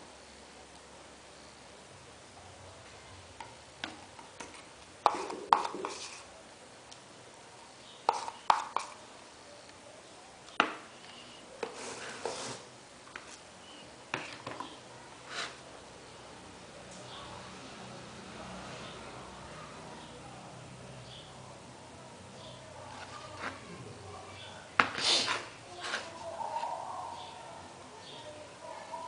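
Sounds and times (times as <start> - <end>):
hard objects clattering on a surface: 14.1 - 15.6.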